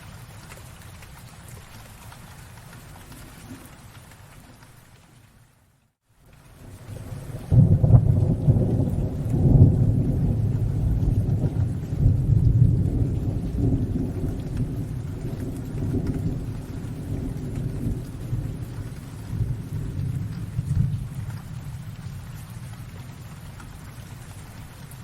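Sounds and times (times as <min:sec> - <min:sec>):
rain hissing: 0:00.0 - 0:25.0
rolling thunder: 0:06.7 - 0:23.9.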